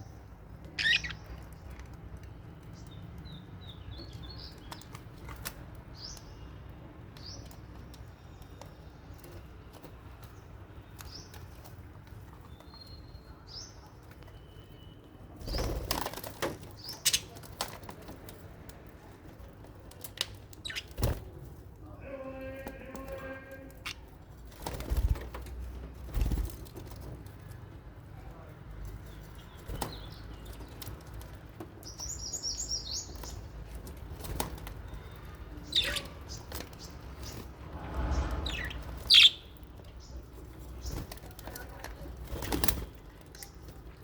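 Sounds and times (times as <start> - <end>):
birds chirping: 0.0 - 16.0, 20.5 - 21.4, 26.4 - 44.0.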